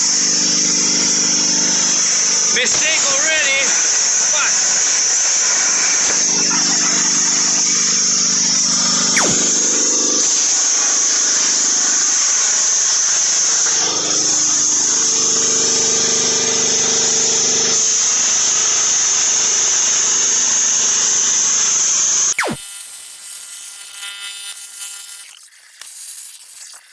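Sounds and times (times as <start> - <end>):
plasma cutter hissing: 6.5 - 13.6, 22.3 - 26.9
low hum: 8.7 - 16.5.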